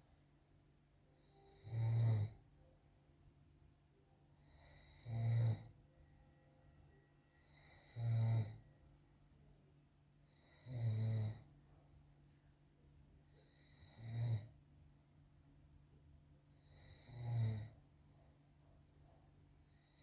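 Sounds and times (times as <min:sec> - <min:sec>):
man snoring: 0:01.2 - 0:02.4, 0:04.5 - 0:05.7, 0:07.4 - 0:08.6, 0:10.3 - 0:11.5, 0:13.4 - 0:14.6, 0:16.6 - 0:17.8.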